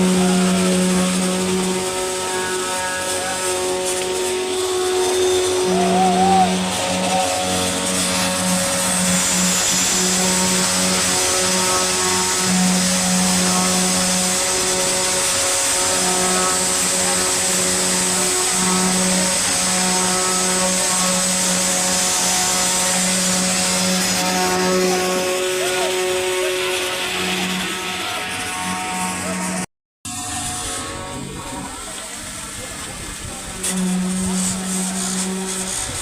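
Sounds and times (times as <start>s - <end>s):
high hiss: 0.0s - 12.5s
machinery motor hum: 0.0s - 36.0s.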